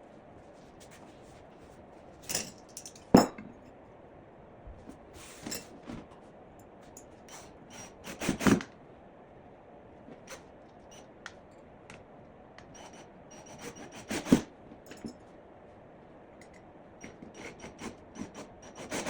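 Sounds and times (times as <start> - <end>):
metal tools clinking and knocking: 2.2 - 3.4.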